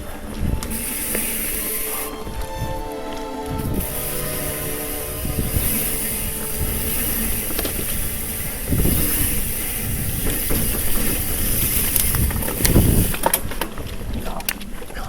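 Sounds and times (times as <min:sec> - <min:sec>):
wind on microphone: 0:00.0 - 0:02.8, 0:03.5 - 0:14.4
bike tyres rumbling on dirt: 0:05.5 - 0:15.0.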